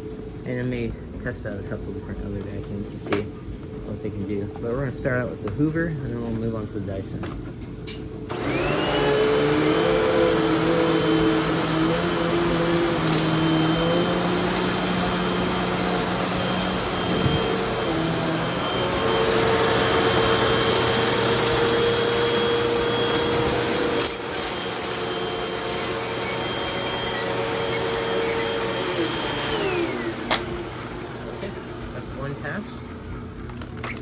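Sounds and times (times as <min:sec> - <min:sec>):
vacuum cleaner motor whine: 0:08.3 - 0:32.8.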